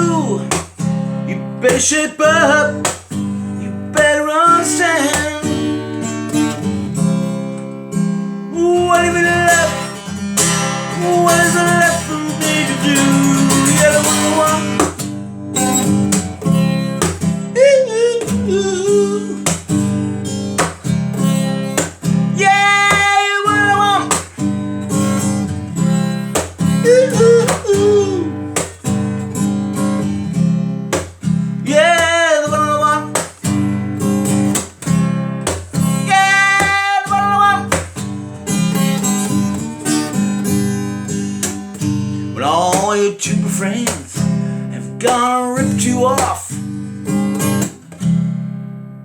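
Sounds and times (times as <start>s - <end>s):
person singing wordless phrases: 0.0s - 0.7s, 1.3s - 2.9s, 3.5s - 5.8s, 8.4s - 10.1s, 10.9s - 15.0s, 17.4s - 19.6s, 22.2s - 24.6s, 26.6s - 28.6s, 31.6s - 33.2s, 35.8s - 37.9s, 42.2s - 46.6s
acoustic guitar strummed: 0.0s - 49.0s.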